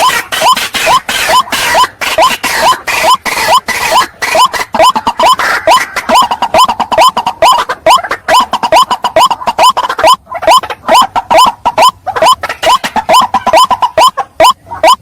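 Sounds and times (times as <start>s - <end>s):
waterhen calling: 0.0s - 15.0s.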